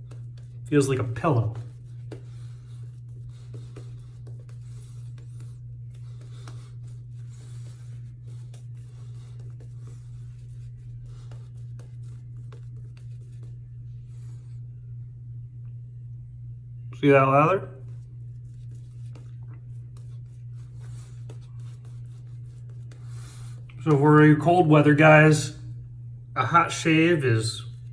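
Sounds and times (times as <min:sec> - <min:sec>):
shaving brush swishing on face: 0:00.0 - 0:14.5, 0:17.8 - 0:25.0
steady low hum: 0:00.0 - 0:27.9.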